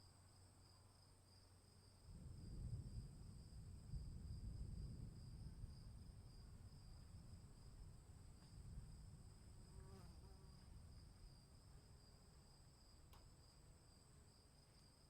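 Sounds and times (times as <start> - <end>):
insect trill: 0.0 - 15.0
faint click: 13.1 - 13.3.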